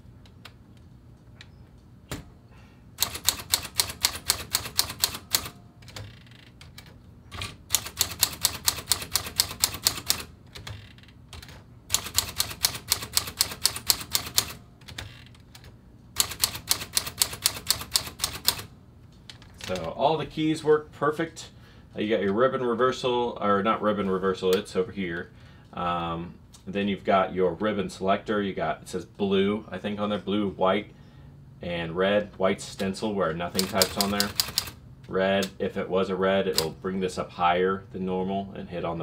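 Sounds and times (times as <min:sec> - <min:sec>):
typewriter key strikes: 0:03.0 - 0:06.0, 0:07.4 - 0:10.3, 0:11.9 - 0:15.0, 0:16.2 - 0:18.7, 0:33.6 - 0:34.7.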